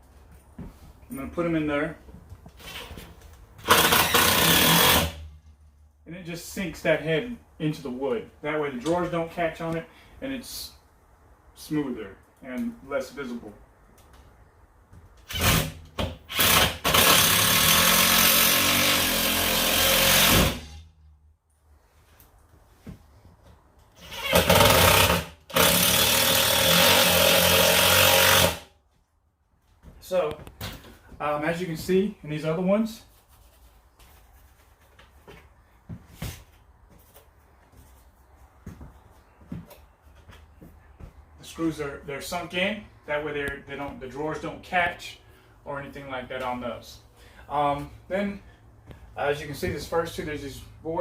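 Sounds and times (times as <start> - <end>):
cordless drill driving a screw: 3.6 - 5.2, 15.3 - 20.8, 24.0 - 28.7.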